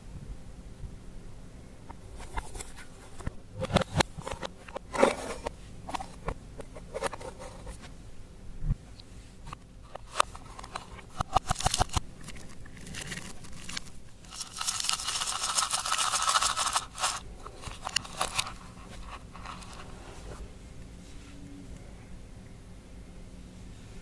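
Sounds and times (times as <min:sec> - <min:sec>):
slime crackling and crunching: 0:11.4 - 0:17.2.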